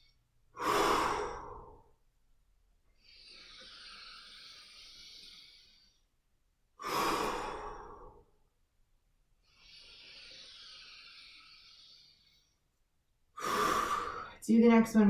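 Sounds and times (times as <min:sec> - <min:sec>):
person exhaling forcefully: 0:13.4 - 0:14.4
person inhaling: 0:13.4 - 0:14.4.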